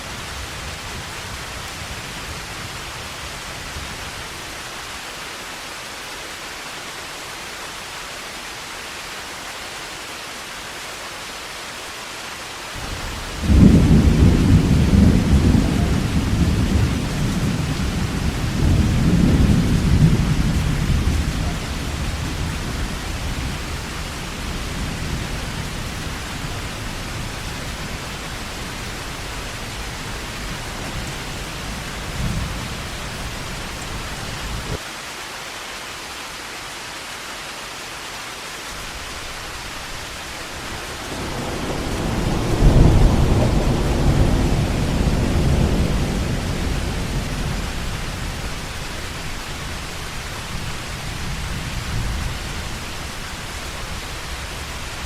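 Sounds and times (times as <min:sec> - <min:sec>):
heavy rain falling: 0:00.0 - 0:55.0
thunder rumbling: 0:12.8 - 0:34.8, 0:39.2 - 0:55.0.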